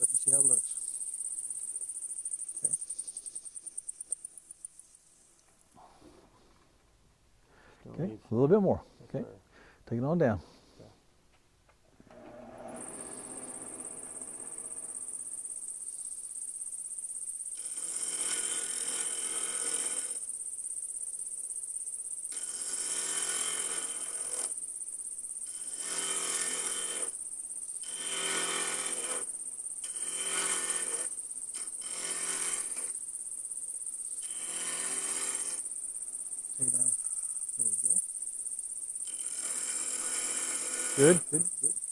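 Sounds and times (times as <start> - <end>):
wood lathe whining: 11.9 - 15.7, 17.5 - 20.3, 22.3 - 24.6, 25.5 - 27.2, 27.8 - 33.0, 34.2 - 35.6, 39.0 - 41.6
turning tool scraping wood: 12.0 - 15.6, 17.6 - 20.2, 22.4 - 24.6, 25.5 - 27.2, 27.8 - 33.0, 34.2 - 35.7, 39.1 - 41.3.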